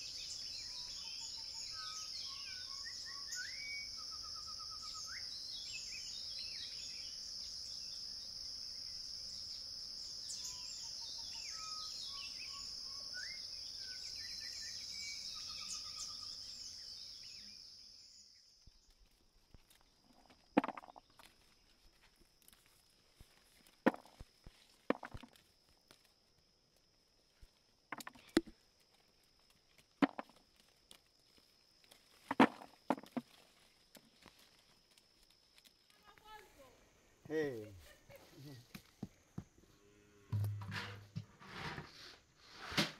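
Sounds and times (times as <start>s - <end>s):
insects droning: 0.0s - 40.4s
sharp knocks and clatters: 20.6s - 21.0s, 23.9s - 24.2s, 24.9s - 25.3s, 27.9s - 28.5s, 30.0s - 30.4s, 32.3s - 33.3s, 40.4s - 41.3s.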